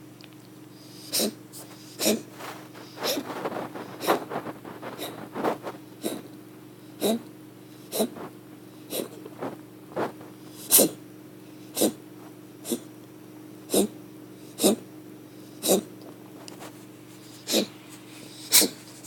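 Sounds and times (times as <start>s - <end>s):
faint steady hum: 0.0s - 19.0s
pet wheezing: 0.8s - 5.4s, 6.0s - 9.4s, 10.4s - 12.0s, 12.6s - 12.9s, 13.7s - 15.9s, 17.3s - 18.9s.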